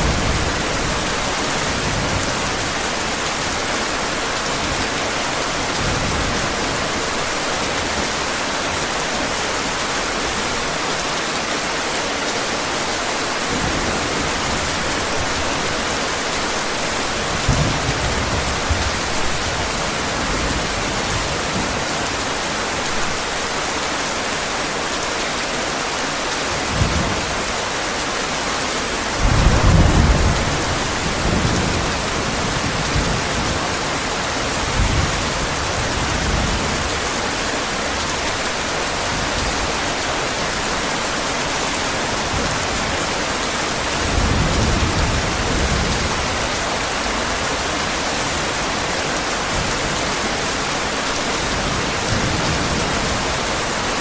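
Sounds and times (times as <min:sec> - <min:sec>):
heavy rain: 0:00.0 - 0:54.0
thunder rumbling: 0:29.0 - 0:36.6.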